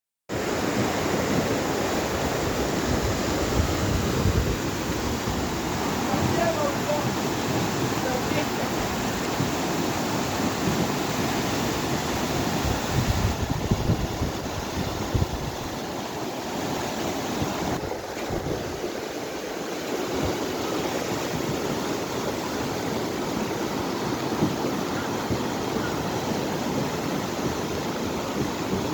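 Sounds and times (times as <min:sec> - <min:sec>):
river in flood roaring: 0:00.3 - 0:28.9
wind on microphone: 0:00.4 - 0:16.0, 0:16.7 - 0:19.1, 0:20.0 - 0:28.9.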